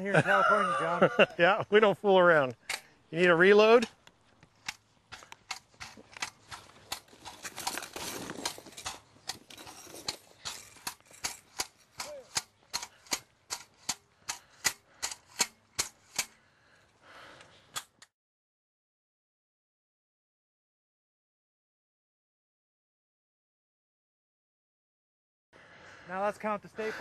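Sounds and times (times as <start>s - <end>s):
staples driven into stony ground: 3.8s - 16.4s.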